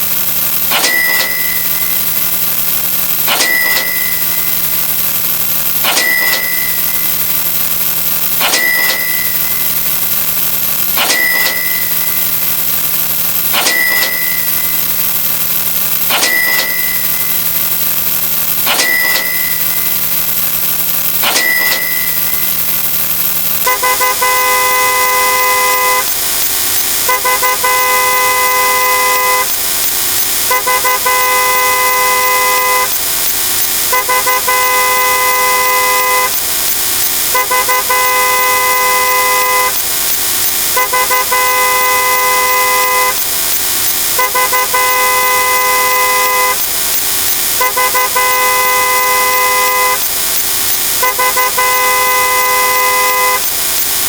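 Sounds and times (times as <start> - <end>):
short tones with clicks: 0.0 - 54.0
steady hiss: 0.0 - 54.0
long chord tones: 27.0 - 29.5.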